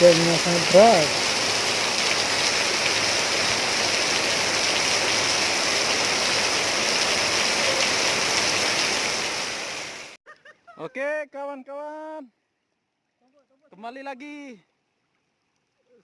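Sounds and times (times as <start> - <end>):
heavy rain hiss: 0.0 - 10.2.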